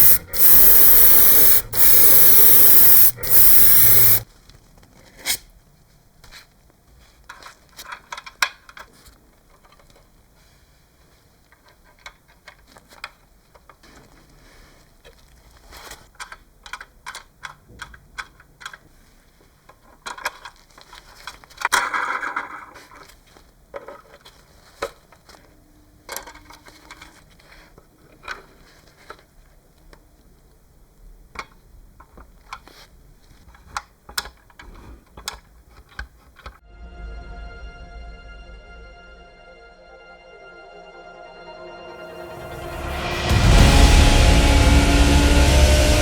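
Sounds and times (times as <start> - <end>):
loud scrape: 42.0 - 46.0.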